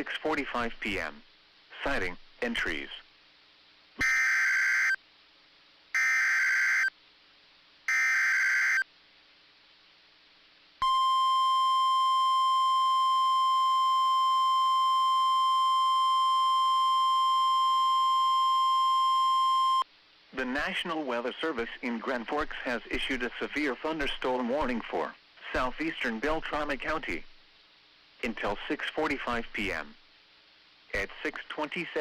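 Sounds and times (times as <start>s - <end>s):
data tone bursts: 4.0s - 5.0s
steady warning alarm tone: 4.0s - 5.0s, 6.0s - 6.9s, 7.9s - 8.8s.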